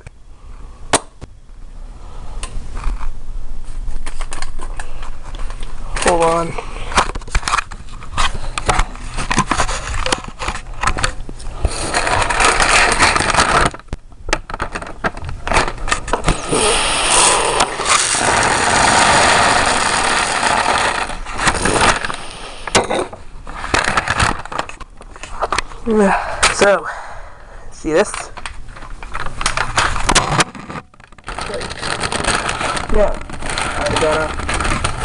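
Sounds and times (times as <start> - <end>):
popcorn clattering and clicking: 4.1 - 25.7, 28.1 - 35.0
paper bag rustling and crinkling: 14.5 - 22.6, 29.0 - 35.0.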